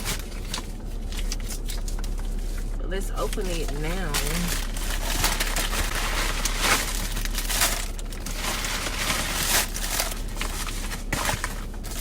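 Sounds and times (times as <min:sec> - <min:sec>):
package wrapping crinkling: 0:03.3 - 0:12.0.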